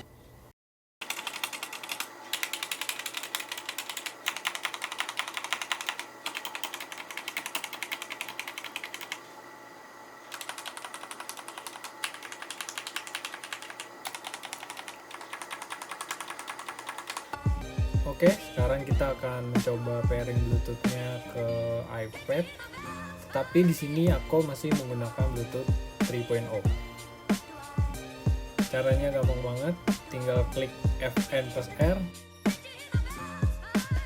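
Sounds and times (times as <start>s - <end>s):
fast typing on mechanical keyboard: 1.0s - 9.2s, 10.3s - 17.4s.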